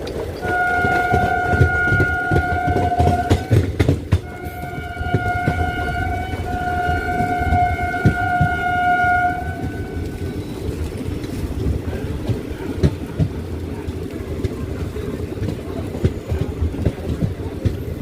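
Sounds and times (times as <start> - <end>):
train rumbling along track: 0.0 - 18.0
wheels knocking: 0.0 - 18.0
shrill locomotive horn: 0.4 - 3.6, 4.2 - 10.2.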